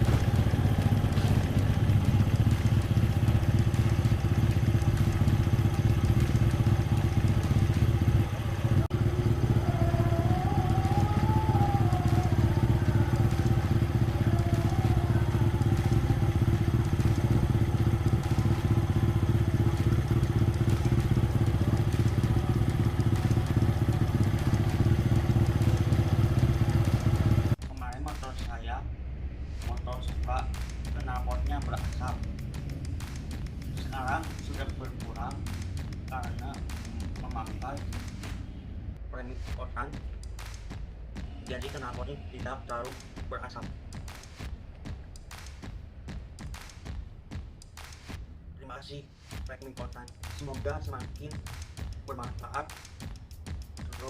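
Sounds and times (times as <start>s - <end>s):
motorcycle engine idling: 0.0s - 27.6s, 29.9s - 38.8s.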